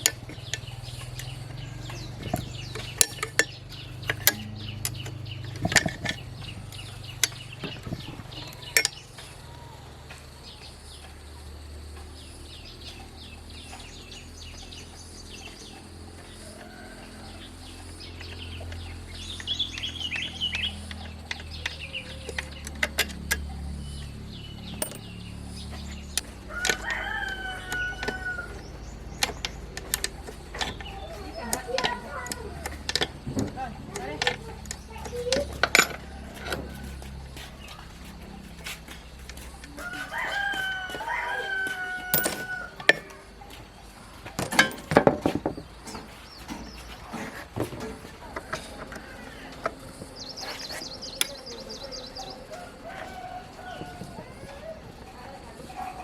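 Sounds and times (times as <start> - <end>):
rooster crowing: 16.2 - 18.2, 26.3 - 29.0, 35.8 - 38.0, 39.6 - 43.2, 51.2 - 56.0
hand tools clinking metal: 18.1 - 26.9, 27.6 - 40.6, 42.0 - 43.4, 44.2 - 49.8.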